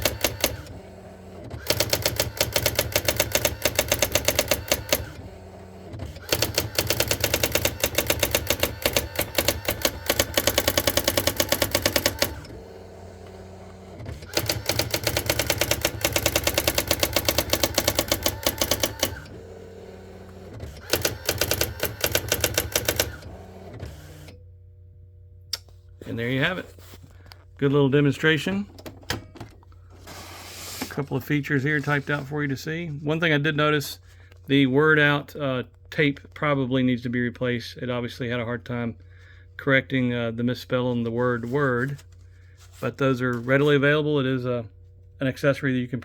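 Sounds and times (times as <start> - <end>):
electronic typewriter keystrikes: 0.0 - 0.8, 1.5 - 5.2, 6.0 - 12.6, 14.0 - 19.4, 20.5 - 23.3.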